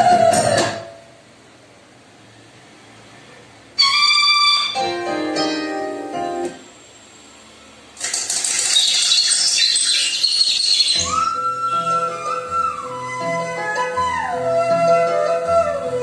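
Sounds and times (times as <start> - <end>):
instrumental music: 3.8 - 6.7, 10.9 - 16.0.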